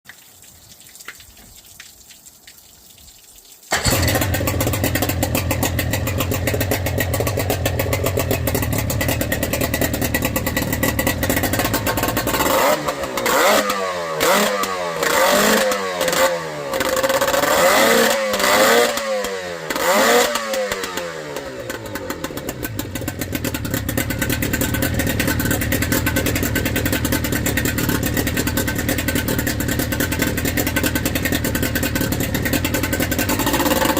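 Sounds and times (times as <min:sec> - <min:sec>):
car engine starting and revving: 0:03.7 - 0:33.9.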